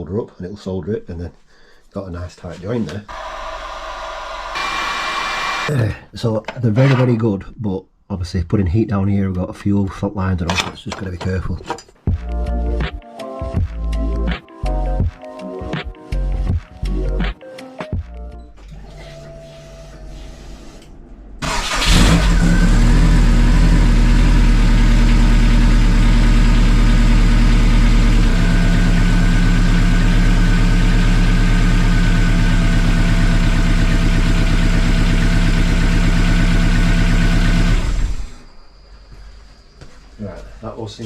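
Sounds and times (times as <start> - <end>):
car engine starting and running: 3.1 - 5.7, 21.2 - 38.4.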